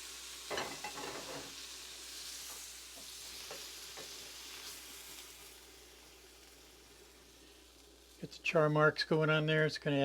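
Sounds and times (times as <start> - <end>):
meat sizzling on a griddle: 0.0 - 10.0.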